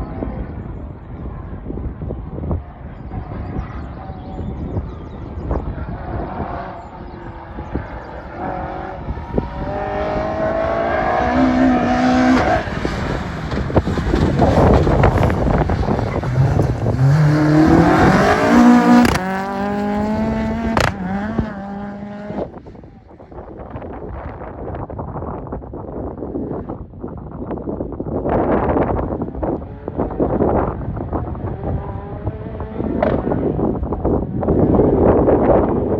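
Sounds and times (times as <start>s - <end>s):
rally car engine revving: 5.4s - 22.8s, 28.4s - 35.9s.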